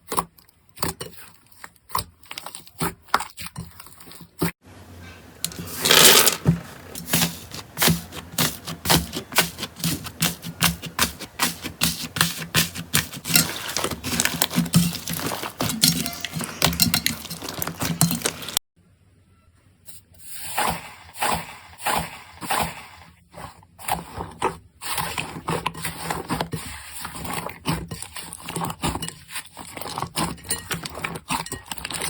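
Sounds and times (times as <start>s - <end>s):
slime squeezed crackling: 7.3s - 18.6s.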